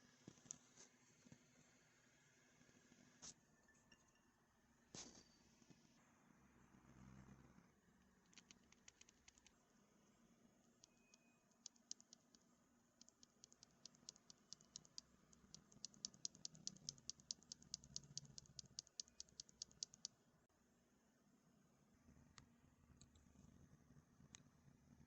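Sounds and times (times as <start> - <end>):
mechanical keyboard typing: 8.3 - 9.5, 11.6 - 12.4, 13.0 - 20.1.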